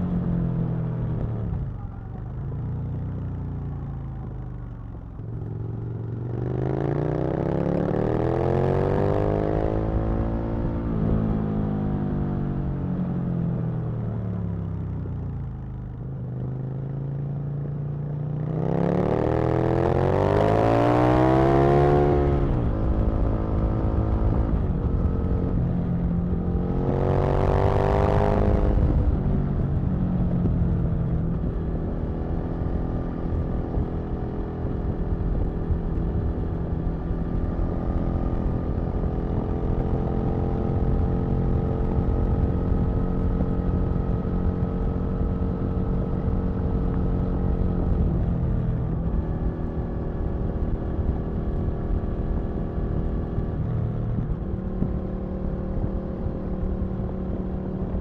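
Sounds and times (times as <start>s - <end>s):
motorcycle engine revving: 18.4s - 58.0s.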